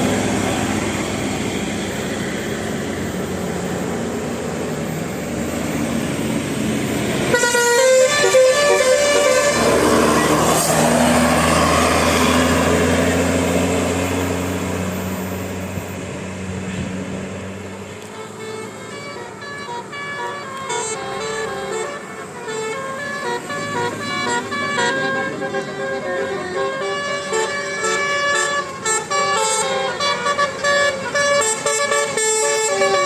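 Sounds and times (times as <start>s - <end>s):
bus engine running: 0.0s - 33.0s
multi-tone musical bus horn: 6.8s - 15.9s, 17.8s - 33.0s.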